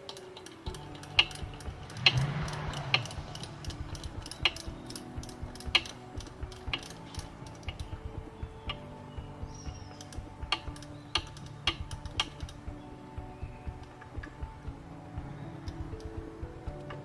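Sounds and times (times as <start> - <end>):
hand ratchet clicking: 0.0 - 7.9, 10.0 - 12.6.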